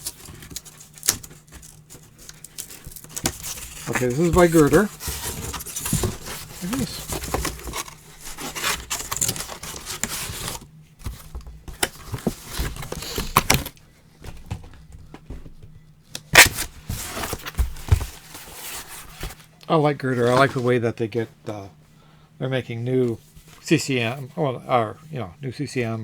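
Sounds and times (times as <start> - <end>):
packaging rustling: 0.0 - 11.2.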